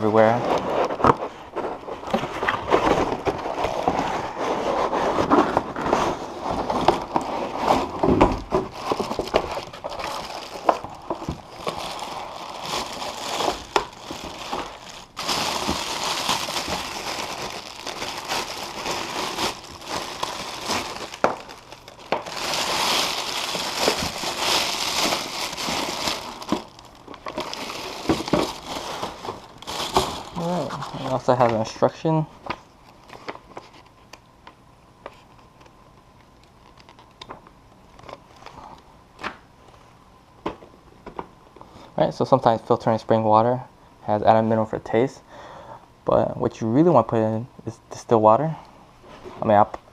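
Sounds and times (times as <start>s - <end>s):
packaging crinkling and rustling: 0.6s - 31.8s, 36.4s - 38.6s.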